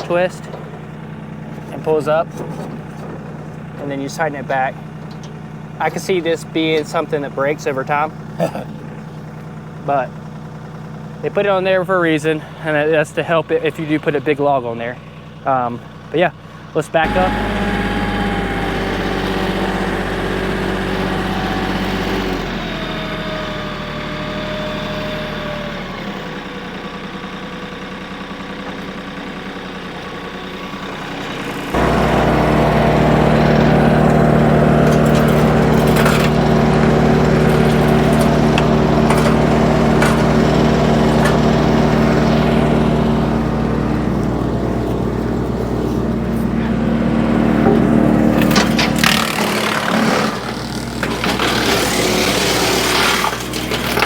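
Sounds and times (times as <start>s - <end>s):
tractor engine running: 0.0s - 54.0s.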